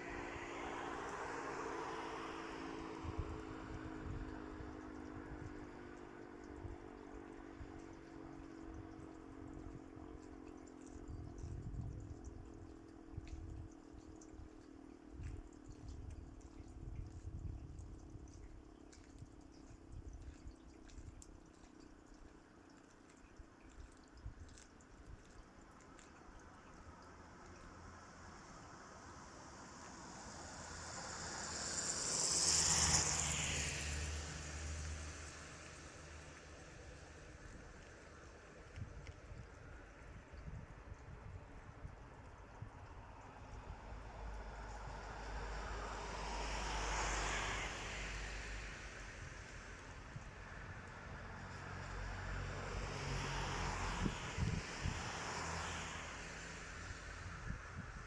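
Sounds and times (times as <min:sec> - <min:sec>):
vehicle passing by: 0:00.0 - 0:07.0, 0:26.9 - 0:39.8, 0:42.6 - 0:58.0.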